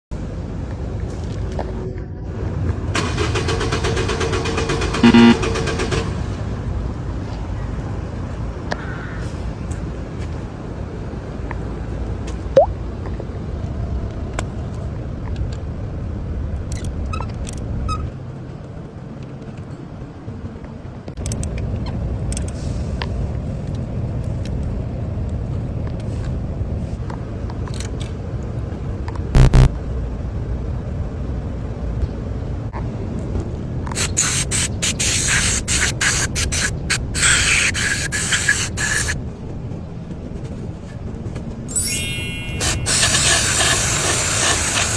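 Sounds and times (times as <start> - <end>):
aerosol spray can hissing: 34.0 - 39.2, 42.6 - 44.9
short rising squeak: 41.7 - 43.8.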